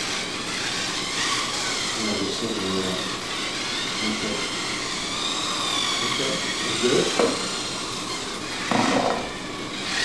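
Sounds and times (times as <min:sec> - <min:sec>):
small electric motors whining: 0:00.0 - 0:10.0.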